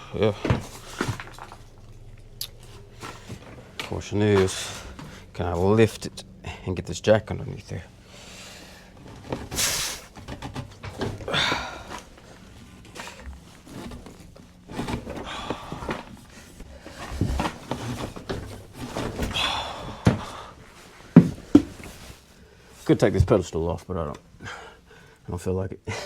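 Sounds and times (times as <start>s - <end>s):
effortful breathing: 0.0s - 5.5s, 7.8s - 10.3s, 11.0s - 13.4s, 14.8s - 22.8s, 24.3s - 25.3s
scrapes and knocks: 20.0s - 22.2s.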